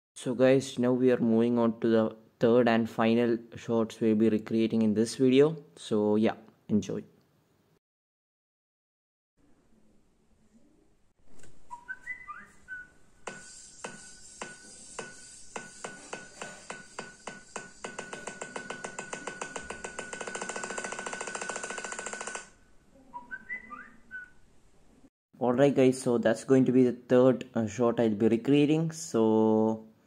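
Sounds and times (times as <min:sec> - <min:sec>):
rising whistled jingle: 0:11.7 - 0:13.0, 0:23.2 - 0:24.4.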